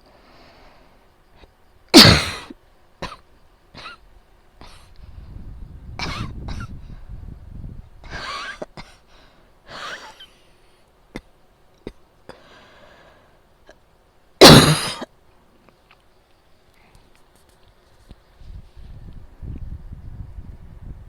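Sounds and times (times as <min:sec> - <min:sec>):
person coughing: 0:02.0 - 0:03.2, 0:06.0 - 0:06.8, 0:14.4 - 0:15.1
soft breath drawn: 0:12.4 - 0:13.4.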